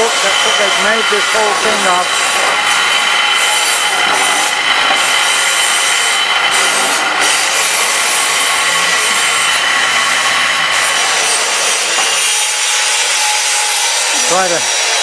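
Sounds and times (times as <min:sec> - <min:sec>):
faint high ringing: 0:00.0 - 0:04.0
grinding block-making machinery: 0:00.0 - 0:15.0.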